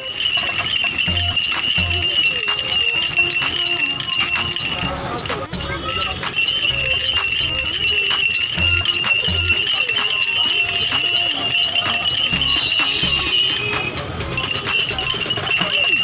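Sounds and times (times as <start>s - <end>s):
small bells jingling: 0.0s - 16.0s.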